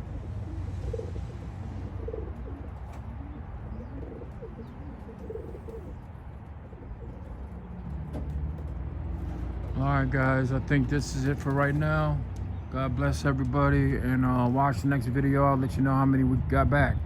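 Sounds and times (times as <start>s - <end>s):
pigeons cooing: 0.0s - 9.7s.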